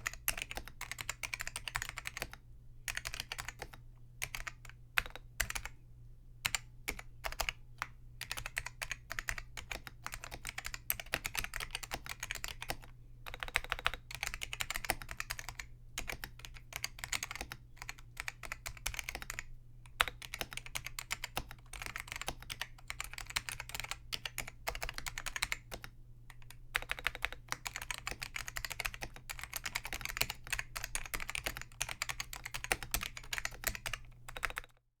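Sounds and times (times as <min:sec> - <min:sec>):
typing on a keyboard: 0:00.0 - 0:05.8, 0:06.4 - 0:34.8
low steady hum: 0:00.0 - 0:34.8.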